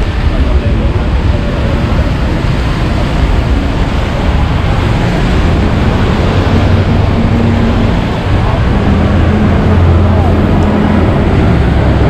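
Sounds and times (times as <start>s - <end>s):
traffic rumble: 0.0s - 12.0s
wind buffeting microphone: 0.0s - 12.0s.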